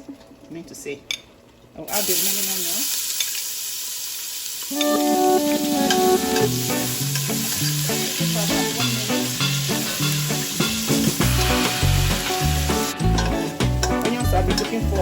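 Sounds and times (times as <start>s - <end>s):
onions sizzling in oil: 1.9s - 15.0s
background music with bass line: 7.9s - 15.0s.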